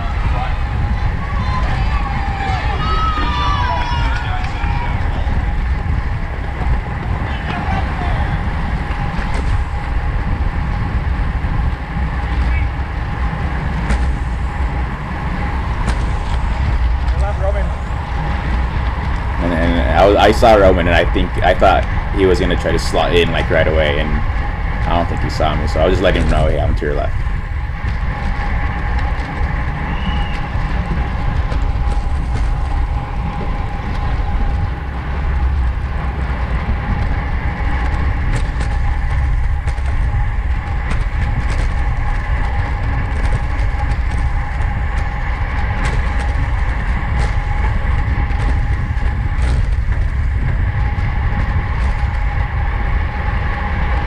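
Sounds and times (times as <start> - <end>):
bicycles whirring: 0.0 - 54.0
wind on microphone: 0.0 - 54.0.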